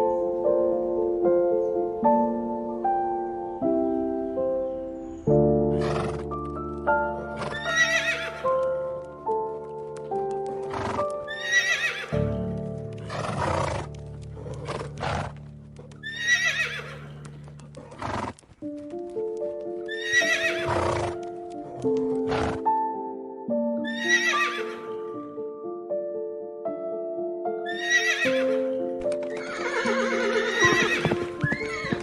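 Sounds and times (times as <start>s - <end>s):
soft piano music: 0.0s - 32.0s
horse whinnying: 5.7s - 6.2s, 7.2s - 8.6s, 10.7s - 12.2s, 16.0s - 18.4s, 19.9s - 21.2s, 23.9s - 24.9s, 27.7s - 28.7s, 29.3s - 32.0s
hoof knocks: 30.6s - 32.0s.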